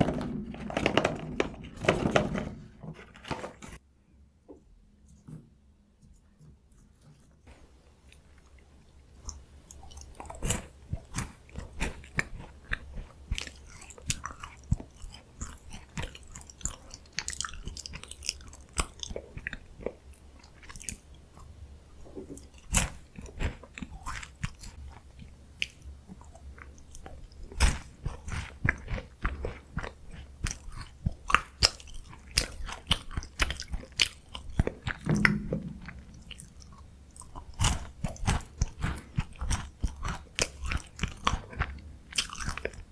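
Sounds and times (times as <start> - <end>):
chewing crunchy biscuits: 6.9 - 35.0, 37.2 - 42.9.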